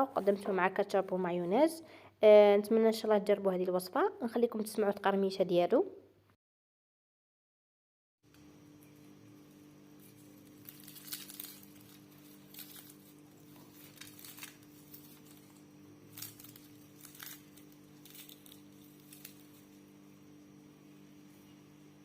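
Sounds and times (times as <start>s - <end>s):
faint steady hum: 8.3s - 22.0s
fried chicken crunching: 10.1s - 19.6s.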